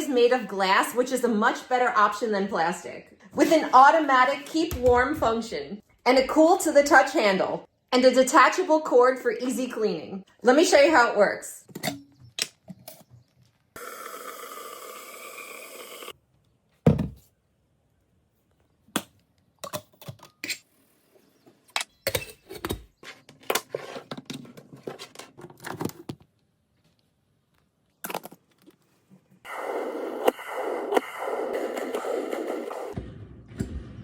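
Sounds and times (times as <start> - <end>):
thud: 33.0 - 34.0.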